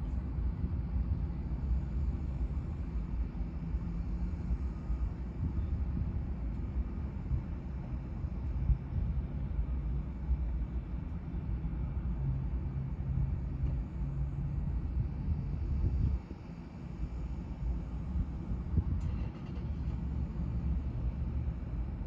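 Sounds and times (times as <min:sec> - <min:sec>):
low rumble with faint hum: 0:00.0 - 0:22.0.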